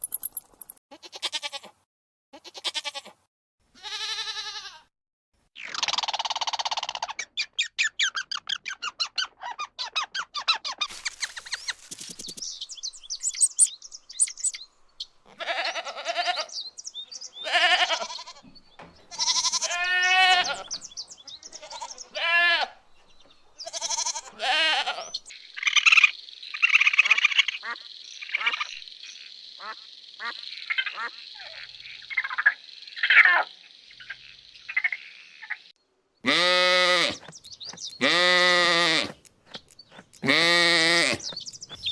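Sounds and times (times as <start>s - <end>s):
animal pulsed chattering: 13.2s - 14.6s
high thin animal squeaks: 13.2s - 14.6s
wavering animal cries: 15.3s - 16.6s, 17.4s - 18.4s, 19.1s - 20.8s, 21.4s - 22.8s, 23.6s - 25.3s.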